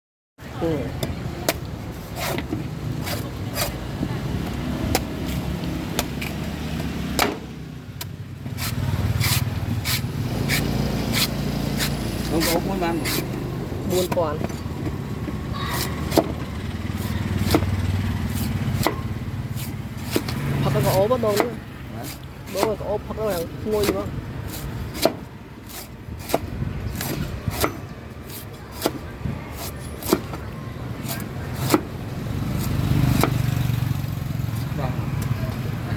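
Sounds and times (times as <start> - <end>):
blade chopping coconut husk: 4.7 - 14.4, 15.7 - 33.9.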